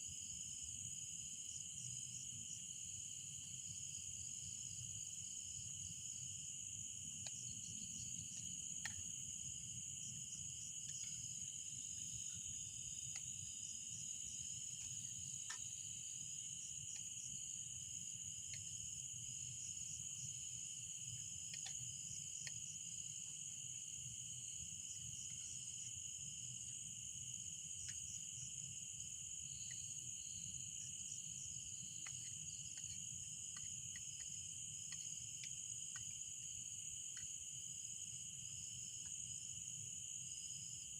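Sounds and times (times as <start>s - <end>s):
insect chorus drone: 0.0s - 40.9s
faint ticks: 7.2s - 9.1s, 13.0s - 13.4s, 14.8s - 15.9s, 18.4s - 18.8s, 21.2s - 22.7s, 27.8s - 28.6s, 29.5s - 30.0s, 30.9s - 36.3s, 37.0s - 37.4s, 38.9s - 39.2s.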